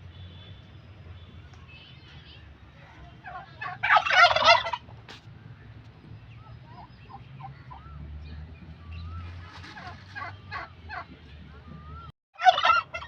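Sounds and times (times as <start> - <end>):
fowl rattling call: 3.3 - 4.9, 9.4 - 11.0, 12.4 - 13.0.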